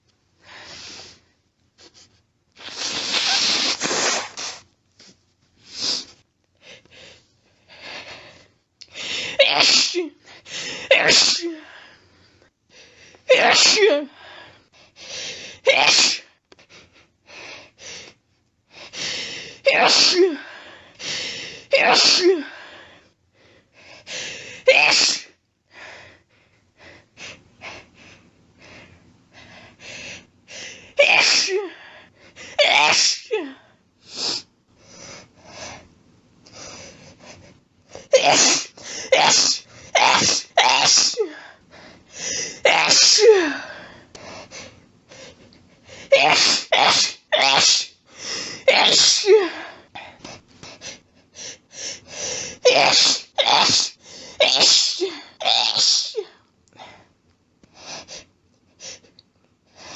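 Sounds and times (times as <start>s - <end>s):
person sneezing: 2.6s - 4.6s, 9.4s - 10.2s, 10.8s - 11.7s, 13.3s - 14.1s, 15.7s - 16.3s, 19.7s - 20.4s, 21.7s - 22.5s, 24.7s - 25.4s, 31.0s - 31.8s, 32.6s - 33.6s, 38.0s - 41.4s, 42.6s - 43.6s, 46.1s - 48.0s, 48.6s - 49.6s, 52.6s - 56.4s
catches of breath: 41.3s - 42.6s.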